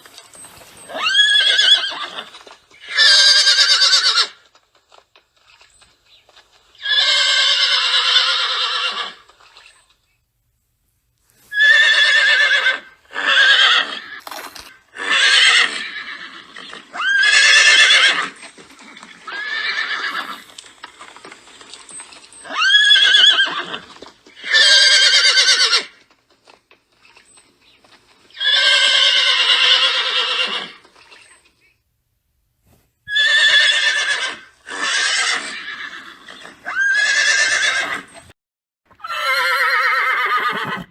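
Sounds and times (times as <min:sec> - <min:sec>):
horse neighing: 0:00.8 - 0:04.4, 0:06.8 - 0:09.3, 0:11.5 - 0:20.6, 0:22.4 - 0:26.0, 0:28.4 - 0:30.9, 0:33.1 - 0:38.2, 0:38.9 - 0:40.9.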